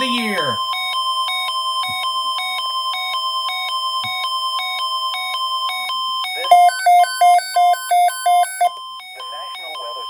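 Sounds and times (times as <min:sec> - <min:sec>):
steady high alert tone: 0:00.0 - 0:00.9, 0:06.2 - 0:10.0
alarm tone switching pitch: 0:00.0 - 0:10.0.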